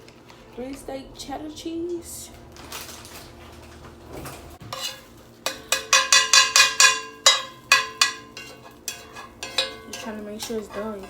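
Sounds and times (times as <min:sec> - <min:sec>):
metal utensil scraping frying pan: 0:04.6 - 0:11.0.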